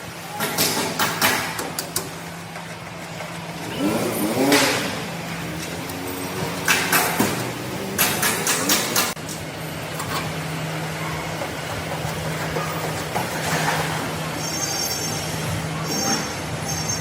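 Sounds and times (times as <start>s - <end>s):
vehicle engine running and revving: 1.9s - 17.0s.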